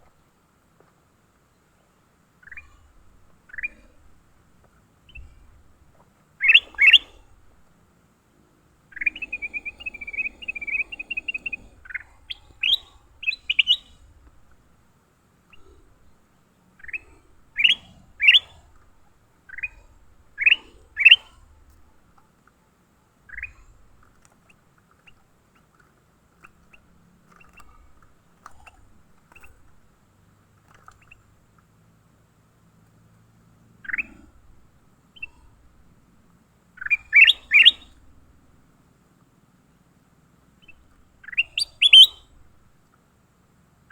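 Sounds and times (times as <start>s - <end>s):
small songbird chirping: 1.4s - 4.2s, 5.0s - 7.3s, 8.8s - 14.6s, 15.5s - 22.0s, 23.1s - 29.9s, 30.6s - 31.4s, 33.8s - 34.4s, 35.1s - 35.7s, 36.6s - 38.2s, 40.5s - 42.4s.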